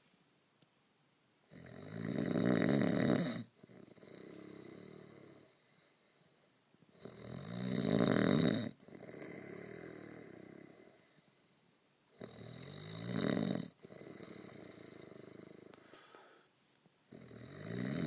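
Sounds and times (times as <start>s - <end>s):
person snoring: 1.5s - 5.6s, 7.0s - 11.1s, 12.2s - 16.5s, 17.1s - 18.0s.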